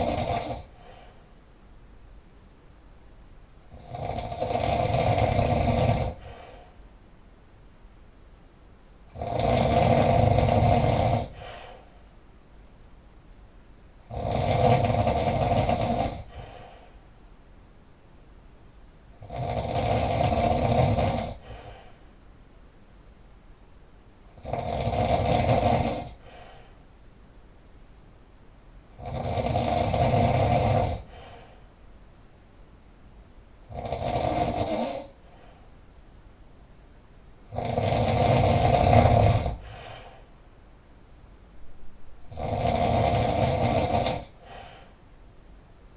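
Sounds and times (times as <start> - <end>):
loud rasping snores: 0.0 - 1.0, 3.7 - 6.6, 9.1 - 11.8, 14.0 - 16.7, 19.2 - 21.9, 24.4 - 26.5, 28.9 - 31.5, 33.7 - 35.2, 37.5 - 40.2, 42.3 - 44.9
quiet breathing: 0.0 - 1.6, 3.6 - 7.0, 9.0 - 12.2, 14.0 - 17.2, 19.1 - 22.3, 24.3 - 27.1, 28.9 - 32.0, 33.6 - 36.0, 37.5 - 40.6, 41.6 - 45.3.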